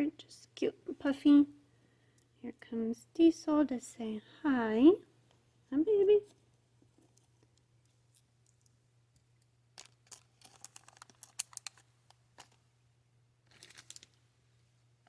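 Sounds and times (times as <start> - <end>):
plastic bag crinkling: 9.8 - 12.6, 13.4 - 14.2.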